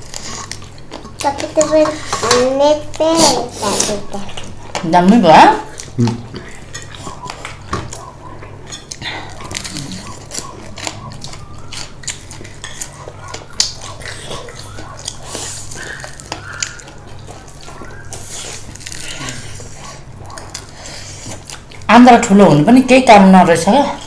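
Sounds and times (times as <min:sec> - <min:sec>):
low steady hum: 0:00.0 - 0:24.0
wet chewing and mouth smacks: 0:05.7 - 0:21.9.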